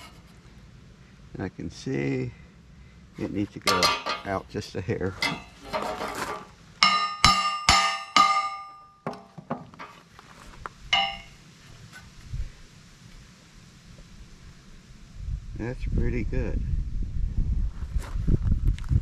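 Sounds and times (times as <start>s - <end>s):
hammer striking steel plate: 3.7s - 4.3s, 6.8s - 9.9s, 10.9s - 11.4s.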